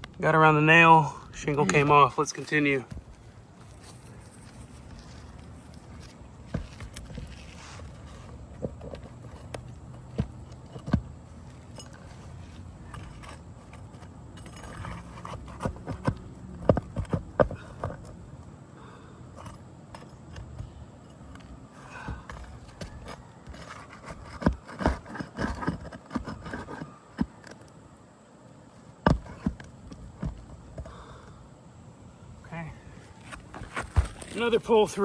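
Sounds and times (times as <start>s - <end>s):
metal knocks and scraping: 1.4s - 18.2s, 19.3s - 27.6s.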